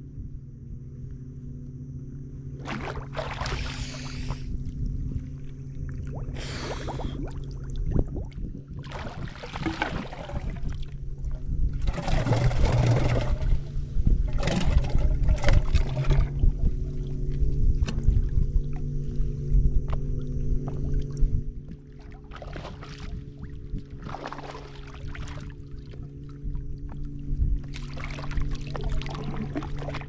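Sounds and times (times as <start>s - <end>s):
water splashing and pouring: 2.6s - 4.0s, 6.0s - 10.9s, 11.8s - 17.0s, 22.1s - 23.4s, 24.0s - 25.9s, 27.7s - 30.0s
boat engine idling: 10.0s - 30.0s.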